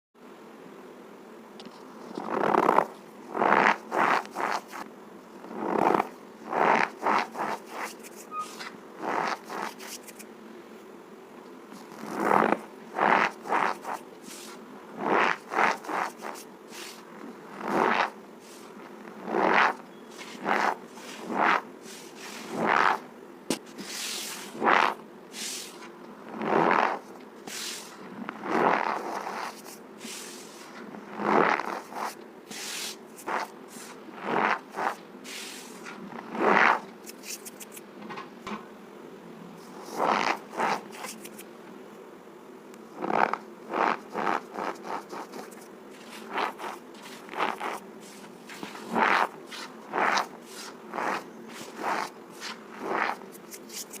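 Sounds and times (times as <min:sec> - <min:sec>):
cornstarch squeaking and crunching: 0:19.3 - 0:21.6, 0:31.2 - 0:33.5, 0:34.2 - 0:35.0, 0:36.4 - 0:37.8, 0:39.8 - 0:41.5, 0:43.1 - 0:47.8, 0:48.5 - 0:54.0.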